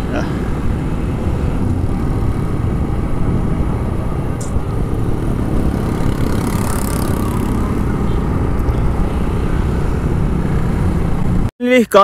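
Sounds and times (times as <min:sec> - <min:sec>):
wind and road noise: 0:00.0 - 0:11.8
motorcycle engine running: 0:01.7 - 0:09.9.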